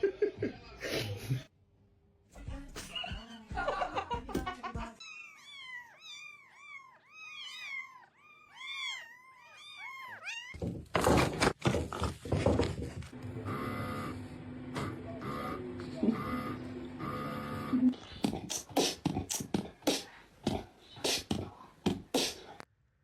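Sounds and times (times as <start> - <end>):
kittens mewing: 5.0 - 10.6.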